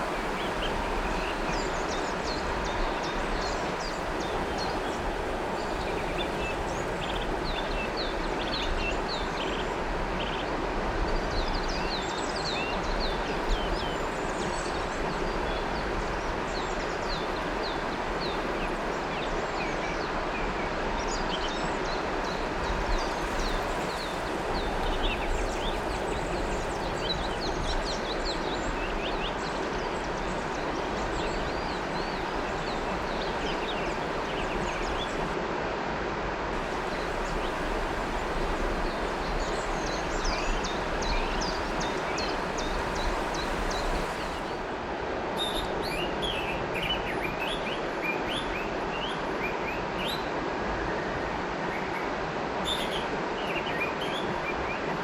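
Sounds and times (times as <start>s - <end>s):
river water flowing: 0.0s - 55.0s
birds chirping: 21.8s - 35.4s, 36.6s - 44.6s.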